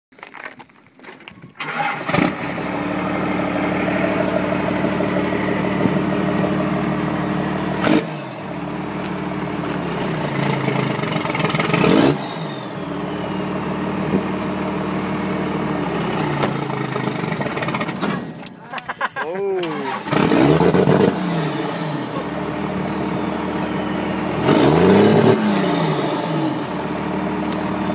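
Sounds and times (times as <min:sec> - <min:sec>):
diesel engine running: 0:01.6 - 0:27.9
turbo whistle: 0:12.0 - 0:13.8, 0:22.0 - 0:25.5.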